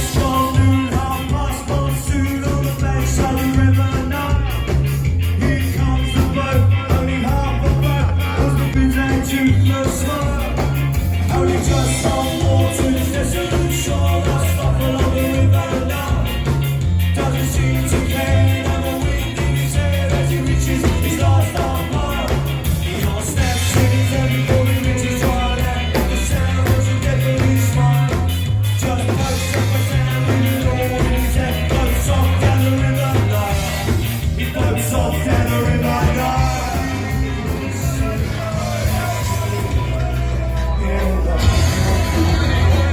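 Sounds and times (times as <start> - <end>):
band playing upbeat ska song: 0.0 - 42.9
lead vocal singing: 0.0 - 42.9.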